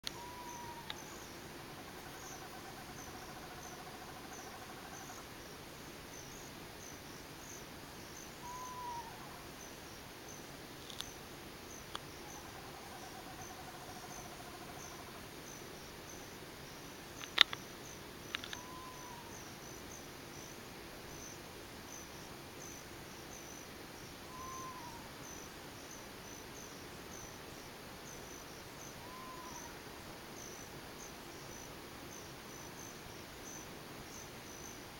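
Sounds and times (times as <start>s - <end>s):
animal calling: 0.0s - 1.2s
wavering animal trills: 0.0s - 5.2s
crickets chirping: 0.0s - 34.9s.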